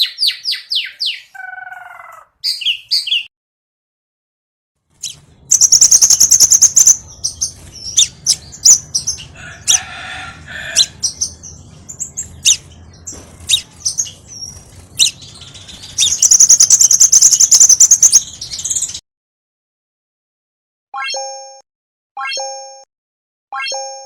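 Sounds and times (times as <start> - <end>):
bird chirping: 0.0 - 3.3, 5.0 - 19.0.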